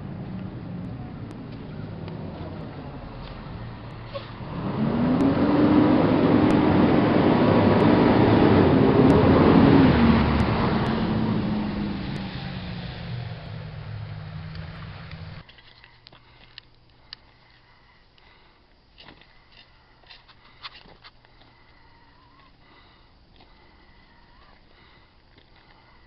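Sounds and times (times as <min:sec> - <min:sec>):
stump grinder engine revving: 0:04.3 - 0:15.4.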